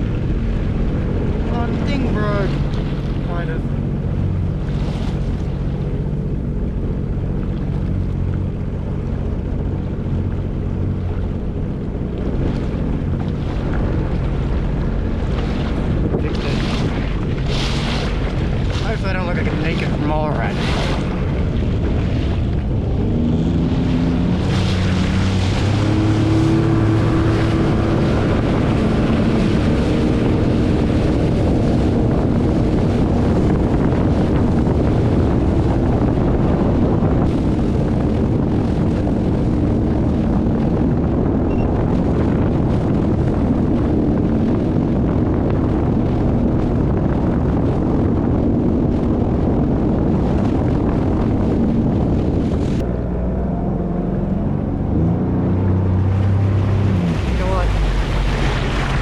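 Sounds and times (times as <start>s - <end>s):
watercraft engine running: 0.0s - 59.0s
wind buffeting microphone: 0.0s - 59.0s.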